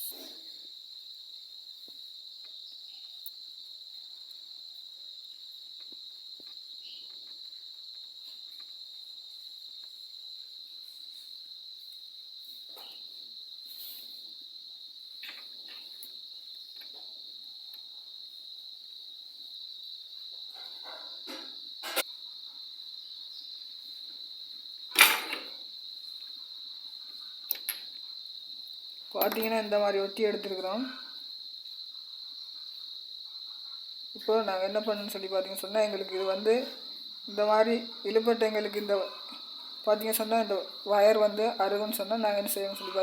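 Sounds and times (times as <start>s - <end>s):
crickets trilling: 0.0s - 43.0s
small parts clicking and rustling: 27.5s - 28.0s.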